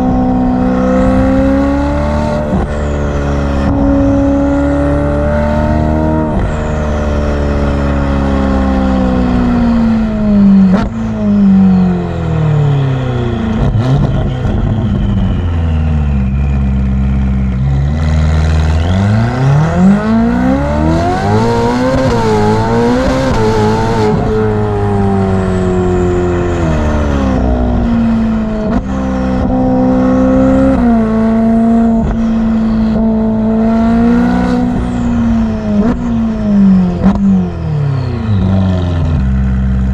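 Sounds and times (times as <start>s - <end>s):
sports car exhaust note: 0.0s - 39.9s
turbo whistles sliding down: 11.6s - 17.6s, 36.8s - 39.3s.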